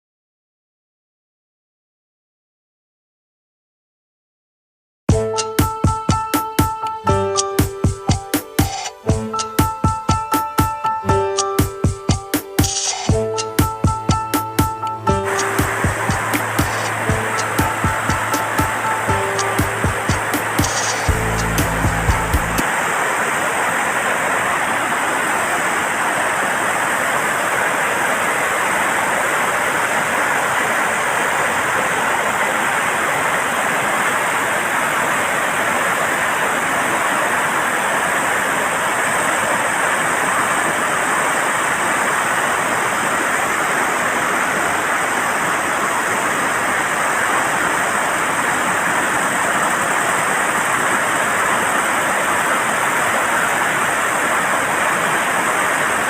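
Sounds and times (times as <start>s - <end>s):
water rushing through floodgates: 15.2s - 56.0s.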